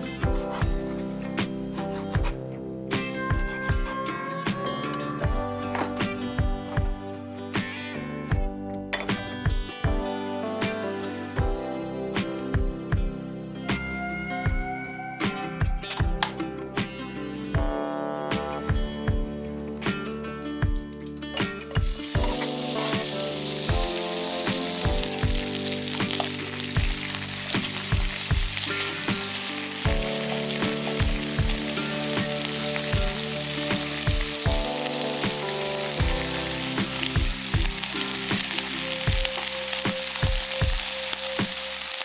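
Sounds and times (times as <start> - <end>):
background music with a beat: 0.0 - 42.0
food sizzling in a frying pan: 21.8 - 42.0.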